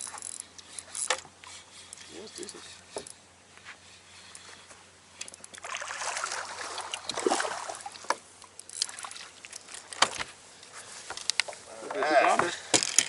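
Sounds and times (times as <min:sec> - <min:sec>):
water splashing and sloshing: 0:05.2 - 0:10.3.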